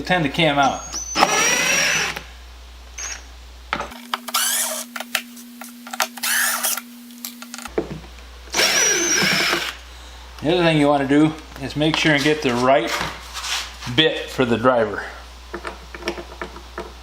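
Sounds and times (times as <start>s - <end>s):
impact driver whining: 1.0s - 2.2s, 4.0s - 5.2s, 5.8s - 7.7s, 8.5s - 9.8s.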